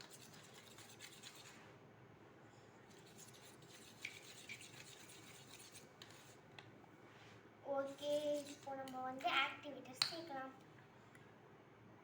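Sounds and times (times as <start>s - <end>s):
spoon stirring in a bowl: 0.0s - 1.6s, 2.9s - 6.4s.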